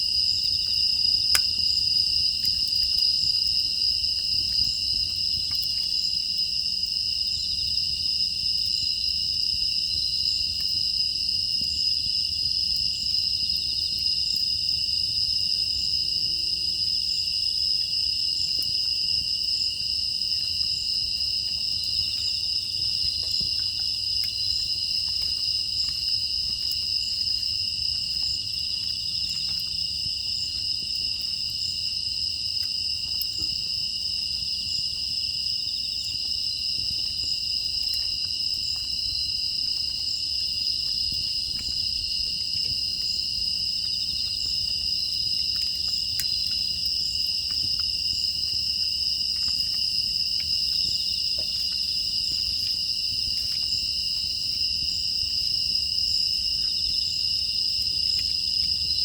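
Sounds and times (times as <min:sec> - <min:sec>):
wood fire crackling: 0:00.0 - 0:16.0, 0:17.2 - 0:34.8
crickets chirring: 0:00.0 - 0:59.0.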